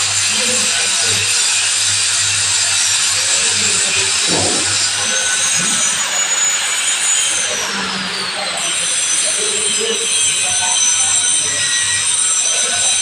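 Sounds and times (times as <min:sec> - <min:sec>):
hand saw rasping: 0:02.7 - 0:05.9.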